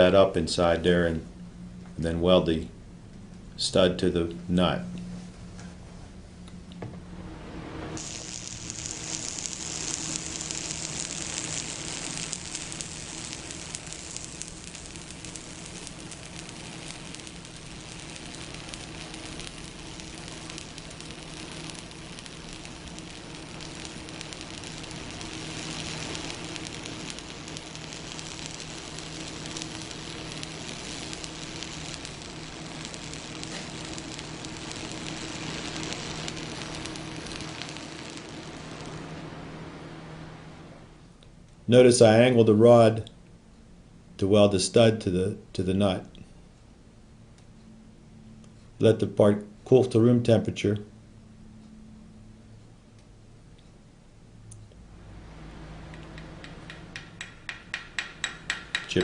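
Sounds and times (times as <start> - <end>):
steady low hum: 0.0 - 59.0
welding arc crackling: 8.0 - 40.5, 54.8 - 59.0.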